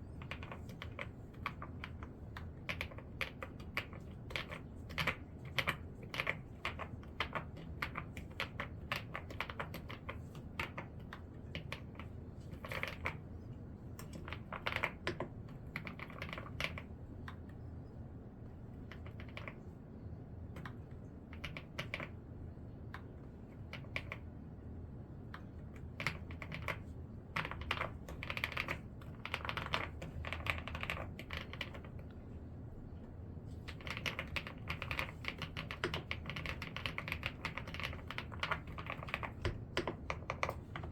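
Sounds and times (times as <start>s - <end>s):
mechanical keyboard typing: 0.1s - 13.2s, 14.0s - 17.5s, 18.8s - 19.6s, 20.6s - 22.2s, 23.6s - 24.2s, 25.8s - 32.1s, 33.7s - 40.9s.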